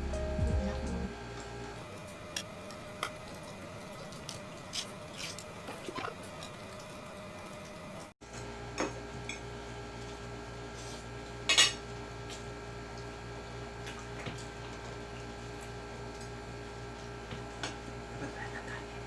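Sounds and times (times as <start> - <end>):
steady low hum: 0.0 - 5.2.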